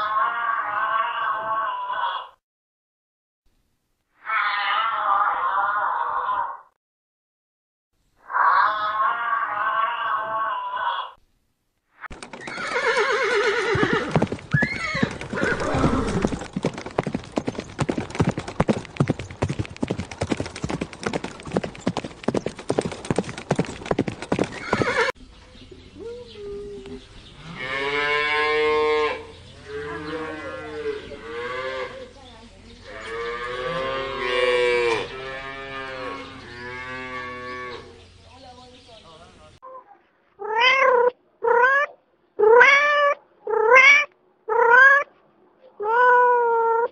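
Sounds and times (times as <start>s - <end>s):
horse whinnying: 12.1s - 17.4s, 24.3s - 25.2s
hooves clattering: 12.1s - 25.2s
cows mooing: 27.4s - 32.0s, 32.9s - 37.9s.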